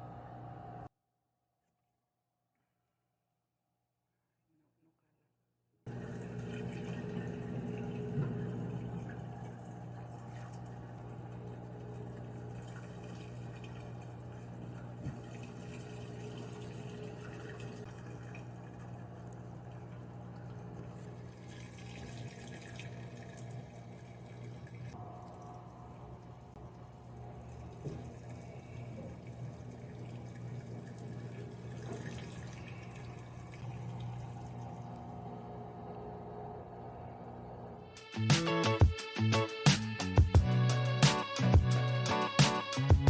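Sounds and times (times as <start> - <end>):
running water: 5.9 - 38.0.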